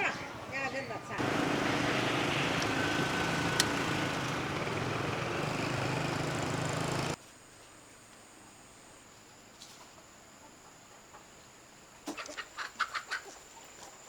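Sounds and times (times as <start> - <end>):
small engine running: 1.2 - 7.2.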